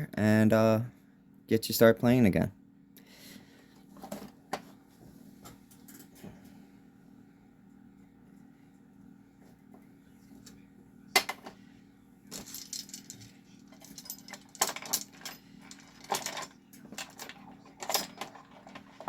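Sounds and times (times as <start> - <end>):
faint low hum: 0.0 - 19.0
hard objects clinking and rattling: 12.3 - 19.0.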